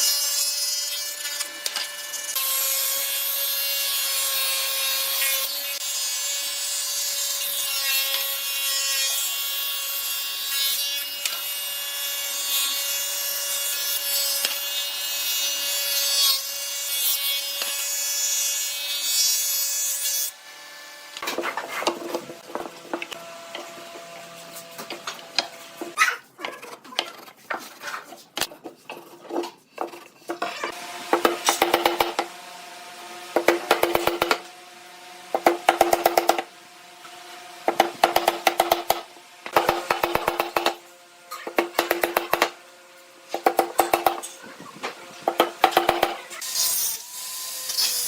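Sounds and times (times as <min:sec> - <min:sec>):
power tool cutting wood: 0:00.0 - 0:21.2, 0:30.5 - 0:44.4, 0:45.0 - 0:48.0.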